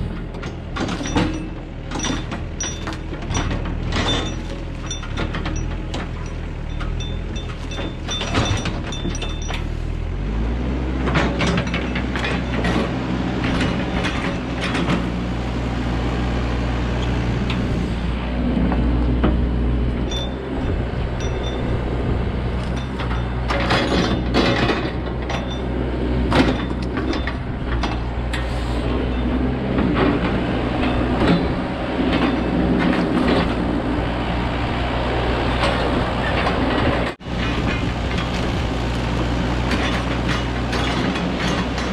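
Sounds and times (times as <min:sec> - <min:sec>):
excavator diesel engine under load: 0:00.0 - 0:41.9
sharp clanks and cracks: 0:00.2 - 0:09.8, 0:35.6 - 0:41.9.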